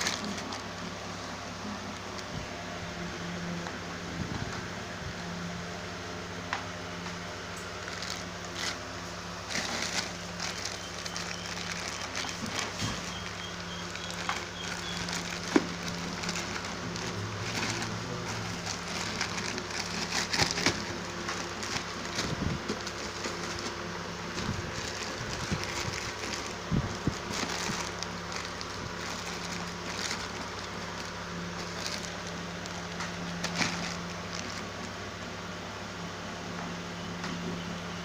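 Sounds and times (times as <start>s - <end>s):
packaging crackling and clicking: 0.0s - 1.3s, 7.6s - 35.0s
steady low hum: 0.0s - 38.0s.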